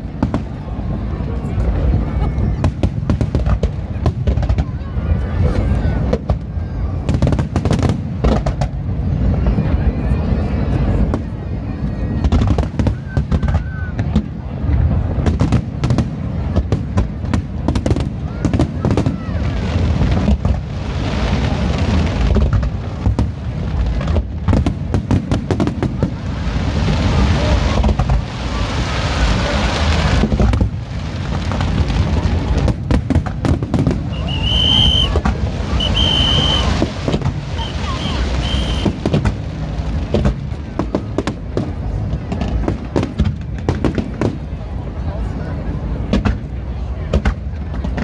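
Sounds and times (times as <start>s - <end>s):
fireworks bangs: 0.0s - 4.7s, 12.2s - 44.5s
crackling hiss: 33.8s - 40.5s
high whistle: 34.1s - 36.9s, 37.5s - 39.0s.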